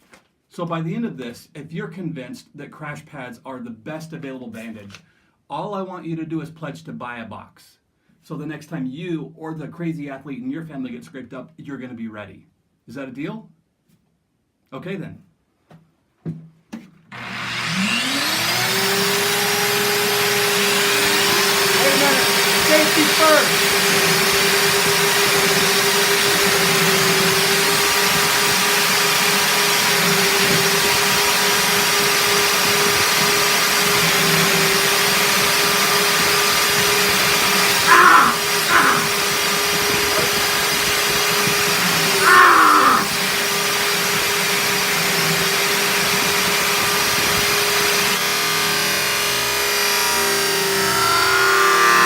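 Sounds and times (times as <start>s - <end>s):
belt sander motor hum: 17.2s - 52.0s
sander belt scraping: 17.2s - 52.0s.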